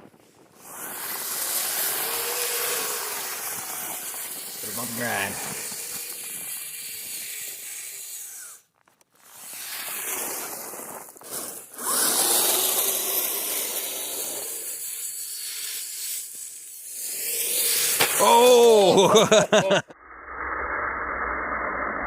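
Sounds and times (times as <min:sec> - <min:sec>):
rc vehicle motor grinding through snow: 0:00.0 - 0:19.9.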